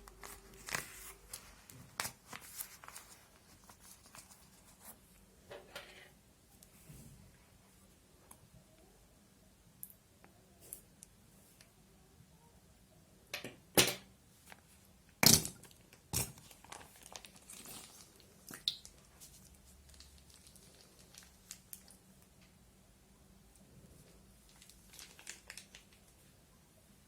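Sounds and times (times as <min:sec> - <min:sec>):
plastic crinkling and rustling: 0:00.0 - 0:05.2, 0:15.5 - 0:22.4, 0:24.0 - 0:26.3.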